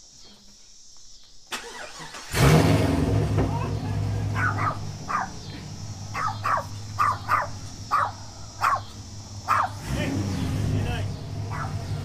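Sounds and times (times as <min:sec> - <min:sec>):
dog barking: 0:04.3 - 0:05.5, 0:06.1 - 0:09.8, 0:11.5 - 0:11.9.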